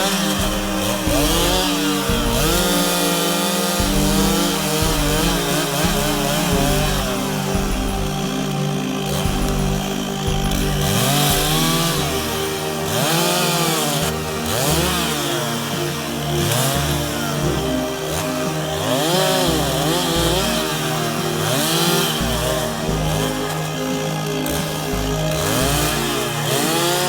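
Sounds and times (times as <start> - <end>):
chainsaw cutting wood: 0.0 - 27.0
chainsaw revving: 0.0 - 27.0.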